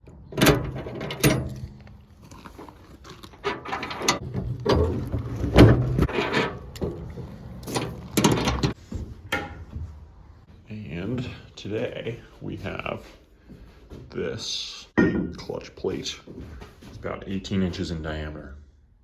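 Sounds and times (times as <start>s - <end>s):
metallic clanks and rattles: 0.0s - 10.0s, 15.0s - 15.5s.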